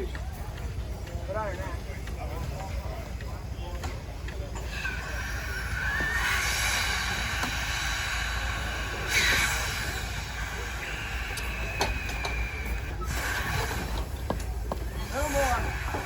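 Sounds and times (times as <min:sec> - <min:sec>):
steam hissing rush: 0:04.5 - 0:16.0
sawmill machine whining: 0:04.6 - 0:16.0.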